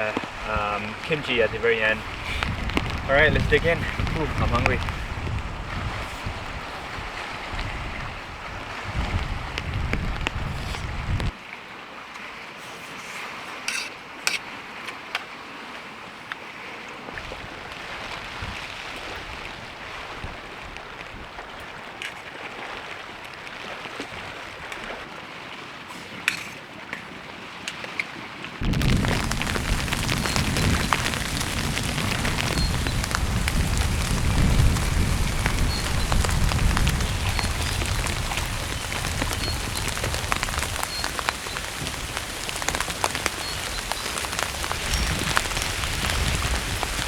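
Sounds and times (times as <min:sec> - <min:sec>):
wind gusts: 0:00.0 - 0:11.4, 0:17.1 - 0:25.0, 0:28.6 - 0:47.0
rain on tent fabric: 0:00.0 - 0:15.7, 0:17.0 - 0:25.2, 0:27.9 - 0:47.0.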